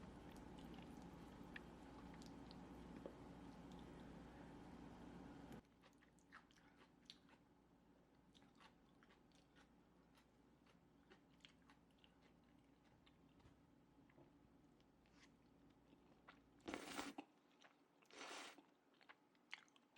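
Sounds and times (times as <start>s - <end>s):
chewing and mouth clicks: 0.3s - 4.0s, 5.8s - 7.4s, 8.3s - 13.5s, 18.6s - 19.9s.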